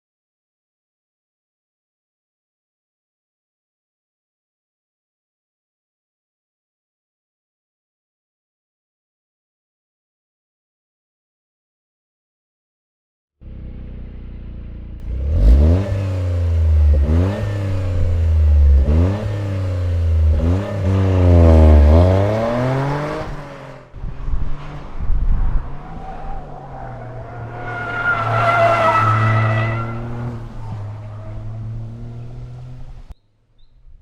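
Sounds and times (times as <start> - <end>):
car engine revving hard: 15.0 - 25.0, 26.6 - 33.1
tyres squealing: 25.8 - 31.9.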